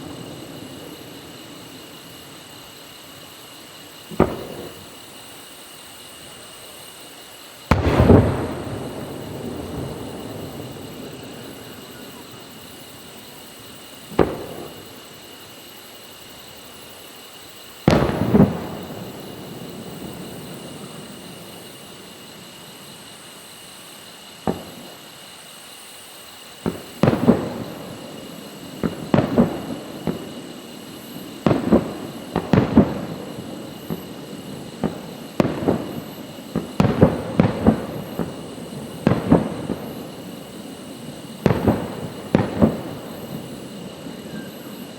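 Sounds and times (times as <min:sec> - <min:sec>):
fireworks bursting with echo: 0:00.0 - 0:44.9.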